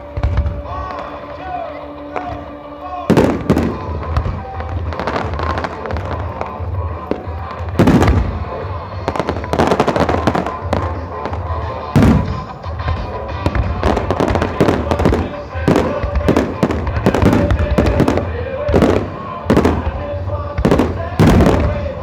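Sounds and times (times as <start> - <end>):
fireworks booming: 0.0 - 22.0
fireworks crackling: 0.0 - 22.0.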